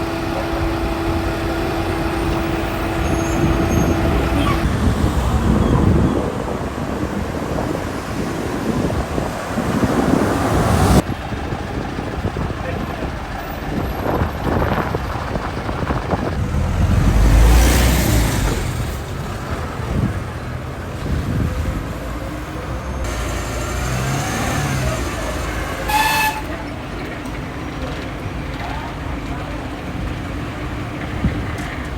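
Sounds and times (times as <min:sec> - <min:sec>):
vehicle horn toot: 0:00.0 - 0:04.8, 0:24.6 - 0:26.7
vehicle passing close: 0:00.0 - 0:11.5, 0:15.5 - 0:22.0, 0:22.6 - 0:26.6
street traffic: 0:00.0 - 0:31.9.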